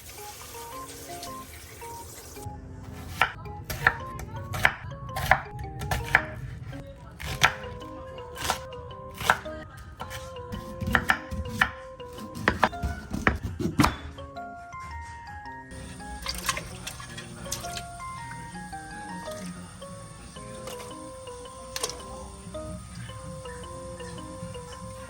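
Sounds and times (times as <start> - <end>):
soft background music: 0.0 - 25.0
knife chopping on cutting board: 2.9 - 6.3, 7.2 - 7.8, 8.4 - 14.1.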